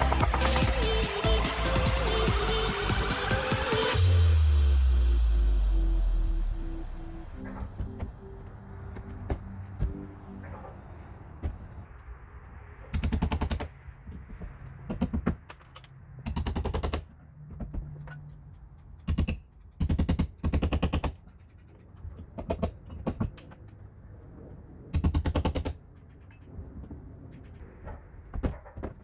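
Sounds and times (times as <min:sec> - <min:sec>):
power tool hammering: 0:00.0 - 0:05.2.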